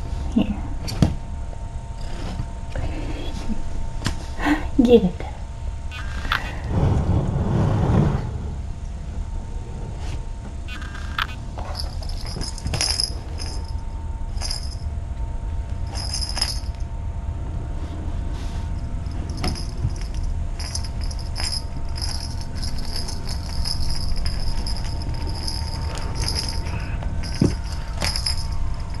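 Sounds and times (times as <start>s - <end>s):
low steady hum: 0.0s - 29.0s
jingling cat toy rattling: 10.7s - 14.9s, 15.8s - 16.8s, 18.8s - 29.0s.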